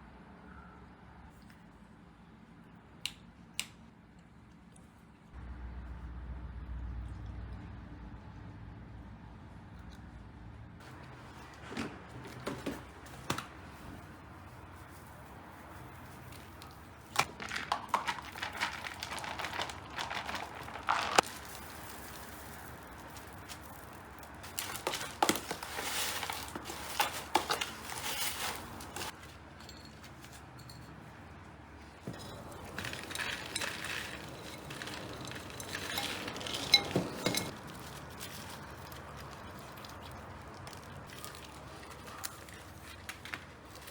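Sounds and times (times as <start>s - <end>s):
repotting rustling and scraping: 10.8s - 43.9s.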